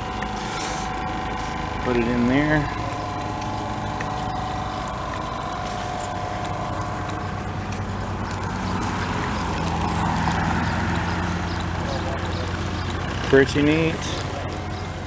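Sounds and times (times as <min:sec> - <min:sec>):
faint high whine: 0:00.0 - 0:09.7
engine humming: 0:00.0 - 0:15.0.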